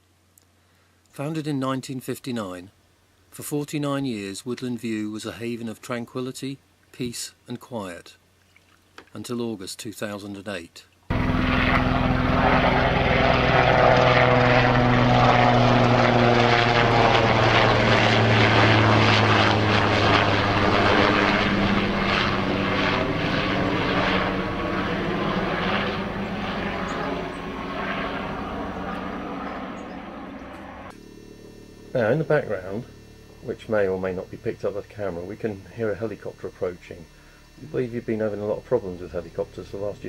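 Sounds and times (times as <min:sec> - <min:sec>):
helicopter flying overhead: 0:11.1 - 0:40.0.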